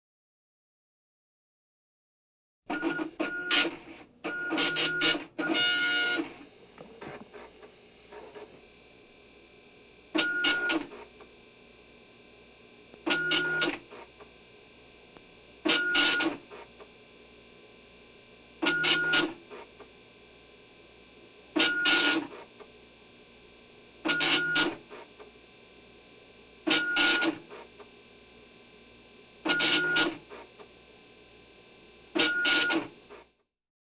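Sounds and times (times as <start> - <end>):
dot matrix printer printing: 2.7 - 8.8, 10.1 - 11.4, 13.0 - 14.3, 15.6 - 16.9, 18.6 - 19.9, 21.5 - 22.7, 24.0 - 25.3, 26.6 - 27.9, 29.4 - 30.8, 32.1 - 33.3.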